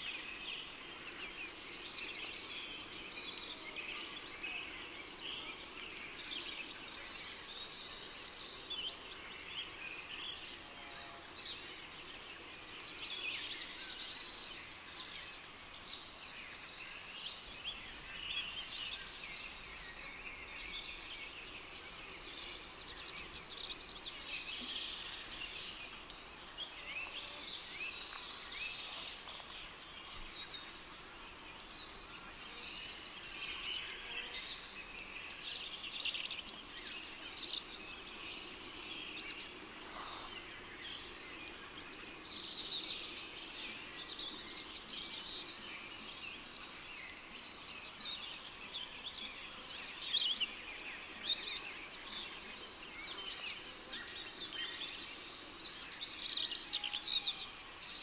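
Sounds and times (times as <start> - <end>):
cricket chirping: 16.1 - 58.0.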